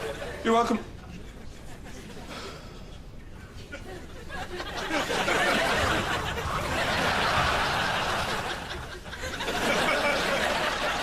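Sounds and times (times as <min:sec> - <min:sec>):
studio audience laughing: 0:00.0 - 0:00.5, 0:03.6 - 0:11.0.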